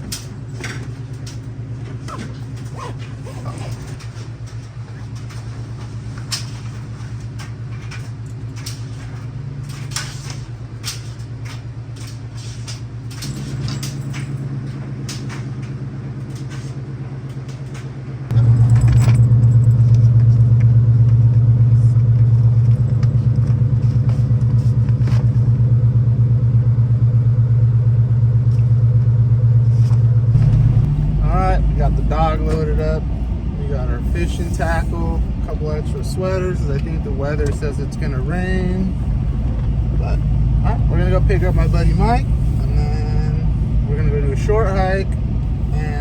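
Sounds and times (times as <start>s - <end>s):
clinks and rattles: 0.0s - 20.6s
vehicle engine running: 0.0s - 46.0s.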